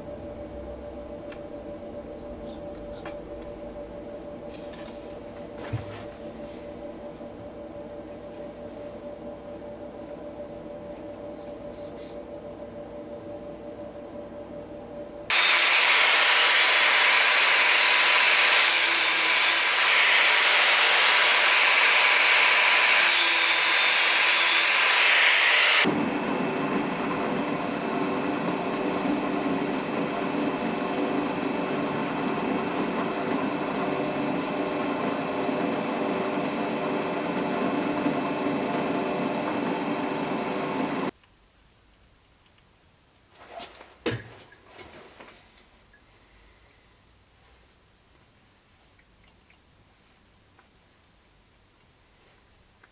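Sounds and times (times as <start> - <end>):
low machine hum: 0.0 - 15.3
power tool grinding wood: 15.3 - 25.8.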